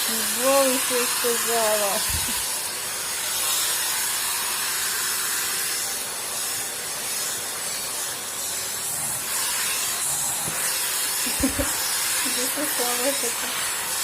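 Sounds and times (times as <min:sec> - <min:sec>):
vacuum cleaner running: 0:00.0 - 0:14.0.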